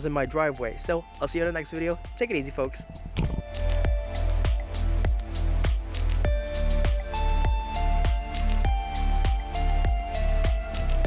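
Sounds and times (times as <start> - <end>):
background music: 0.0 - 11.0
steady kick drum: 2.7 - 10.7.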